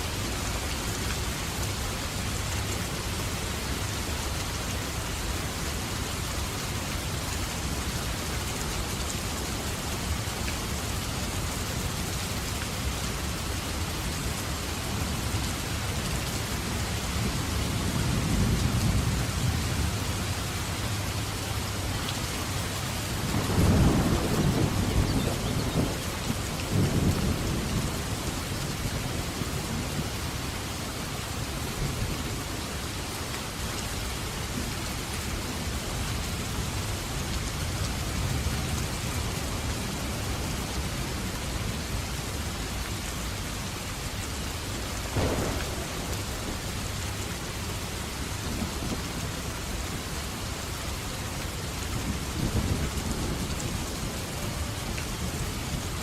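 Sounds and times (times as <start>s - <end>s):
heavy rain: 0.0s - 56.0s
thunder rolling: 23.3s - 27.9s, 45.2s - 47.0s.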